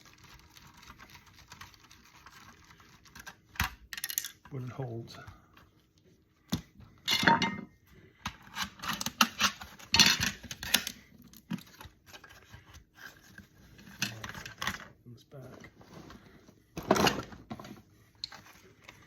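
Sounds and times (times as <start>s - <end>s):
hand tools and metal parts clinking: 7.1s - 7.7s.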